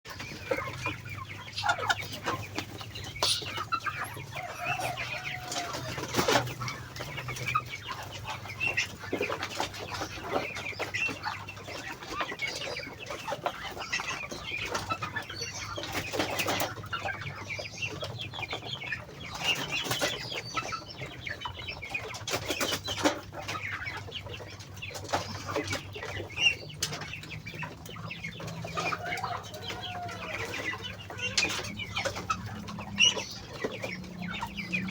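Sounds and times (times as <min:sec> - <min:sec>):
ducks clicking: 0:00.1 - 0:34.9.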